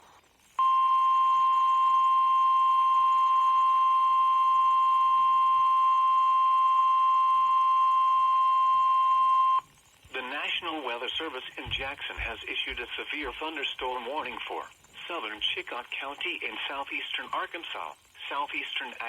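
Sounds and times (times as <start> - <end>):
steady high alarm beep: 0.6 - 14.4.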